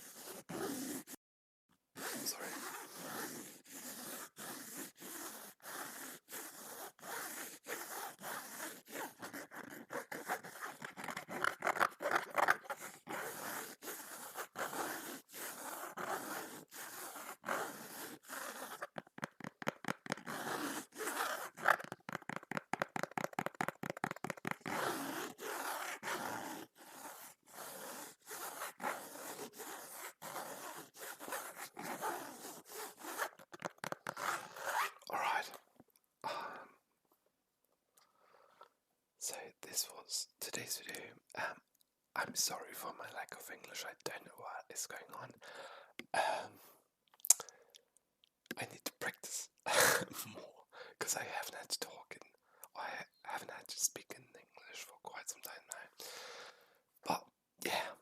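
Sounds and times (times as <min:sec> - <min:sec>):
hands scraping on a book: 0:00.0 - 0:01.2, 0:02.0 - 0:35.1.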